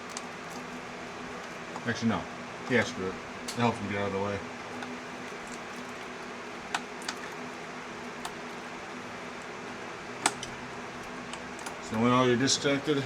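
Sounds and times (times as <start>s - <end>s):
steady background hum: 0.0s - 13.0s
plastic connectors clicking: 10.2s - 11.9s.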